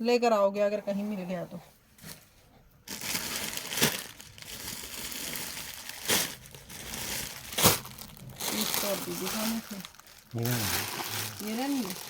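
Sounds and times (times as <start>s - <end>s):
clothing crinkling and rustling: 0.9s - 12.0s
sharp crackles: 3.0s - 12.0s.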